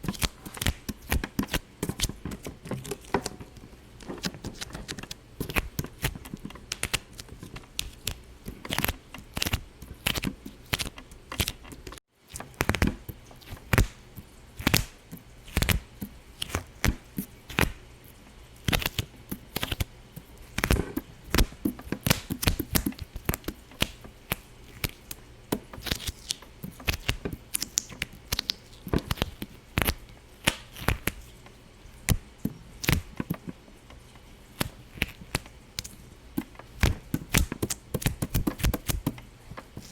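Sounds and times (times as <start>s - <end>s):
sharp irregular pops and clicks: 18.7s - 31.2s, 34.6s - 39.9s.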